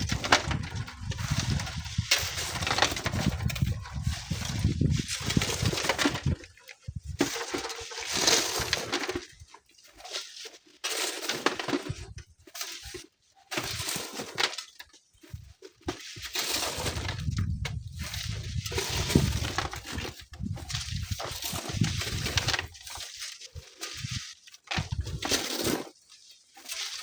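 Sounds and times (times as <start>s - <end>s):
gusty wind buffeting microphone: 0.0s - 7.2s, 17.0s - 22.6s.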